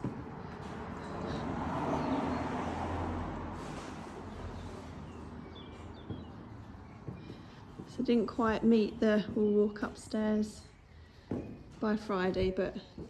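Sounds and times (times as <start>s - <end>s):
vehicle passing by: 0.0s - 7.0s.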